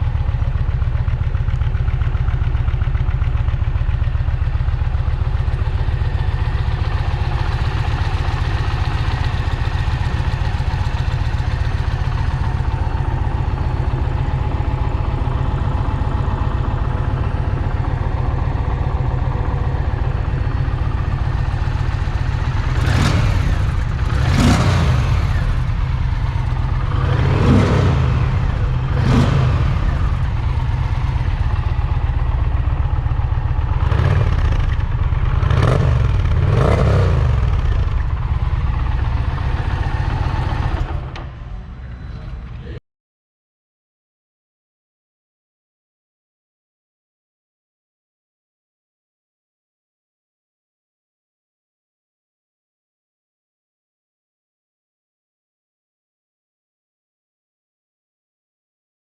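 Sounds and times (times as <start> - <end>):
motorcycle engine idling: 0.0 - 42.8
engine revving: 21.4 - 31.8, 33.6 - 41.4.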